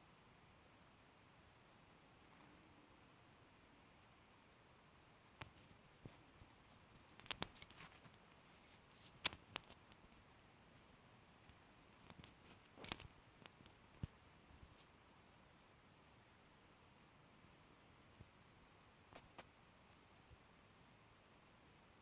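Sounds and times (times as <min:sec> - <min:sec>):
faint clicks and scratchy ticks: 0:05.4 - 0:15.0, 0:17.4 - 0:20.5.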